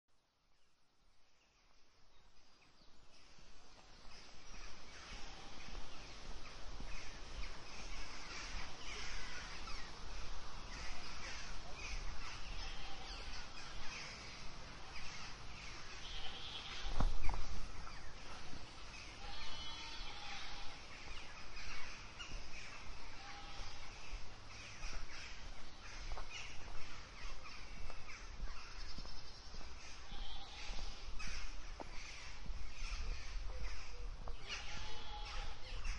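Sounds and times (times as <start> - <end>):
birds calling: 2.4 - 35.9
goats bleating: 12.4 - 13.9, 16.0 - 17.0, 19.2 - 20.8, 23.1 - 23.9, 30.0 - 31.0, 34.3 - 35.7.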